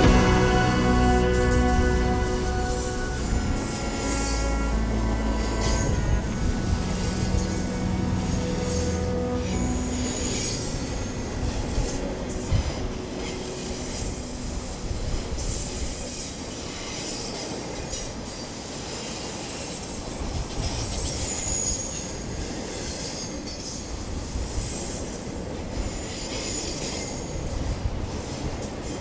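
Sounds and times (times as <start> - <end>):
train rumbling over bridge: 0.0 - 18.4.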